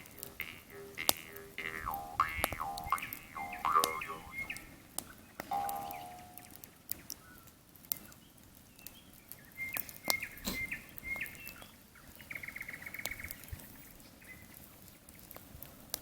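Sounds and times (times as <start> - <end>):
nightingale singing: 0.0 - 4.8, 5.4 - 6.6
campfire crackling and popping: 0.0 - 16.0.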